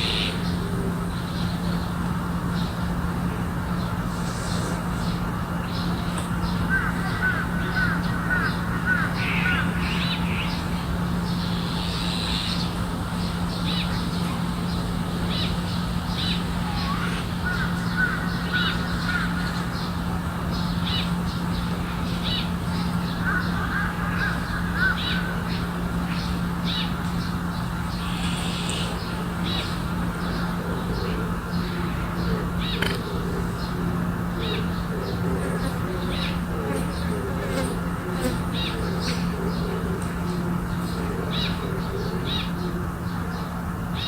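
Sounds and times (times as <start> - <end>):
crow chattering calls: 0.0 - 2.3, 3.8 - 44.0
low hum and rumble: 0.0 - 44.0
small birds chirping: 0.0 - 44.0.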